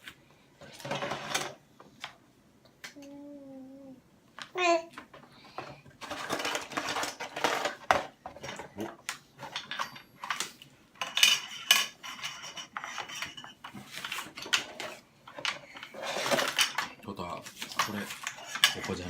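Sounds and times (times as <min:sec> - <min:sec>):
plastic toy pieces clattering: 0:00.7 - 0:01.6, 0:05.0 - 0:19.0.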